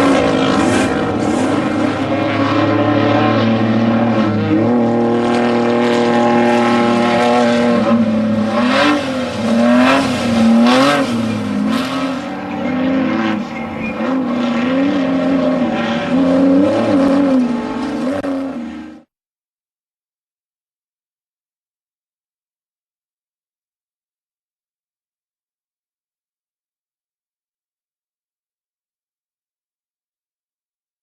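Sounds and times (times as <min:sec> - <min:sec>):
vehicle engine running hard: 0:00.0 - 0:19.1.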